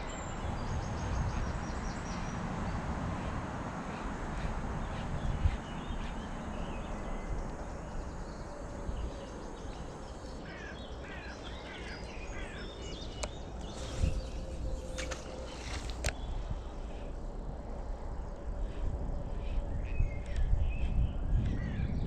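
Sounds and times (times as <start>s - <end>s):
small birds chirping: 0.0s - 22.0s
wind rumble: 0.0s - 22.0s.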